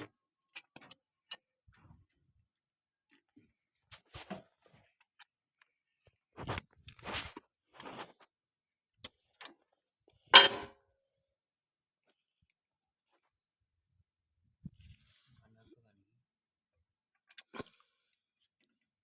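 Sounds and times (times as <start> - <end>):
spanner and metal parts clinking: 10.4 - 10.7.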